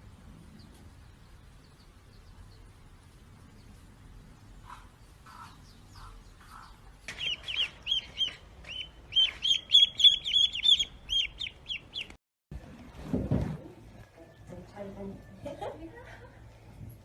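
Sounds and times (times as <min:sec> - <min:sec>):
bird chirping: 0:04.4 - 0:12.2.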